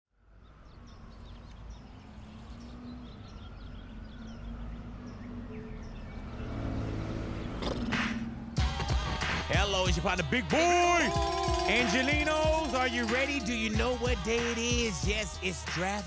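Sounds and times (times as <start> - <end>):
traffic hum: 0.2 - 16.0
small birds chirping: 0.4 - 8.0.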